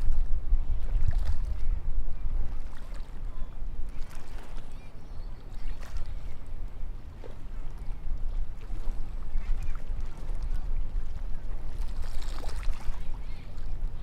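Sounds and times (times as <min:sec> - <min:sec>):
wind on microphone: 0:00.0 - 0:14.0
lapping water: 0:07.2 - 0:14.0.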